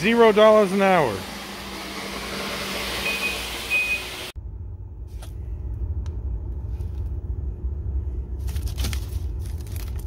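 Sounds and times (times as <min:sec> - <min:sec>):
high electronic beeps: 0:03.0 - 0:04.1
low rumble: 0:04.4 - 0:10.0.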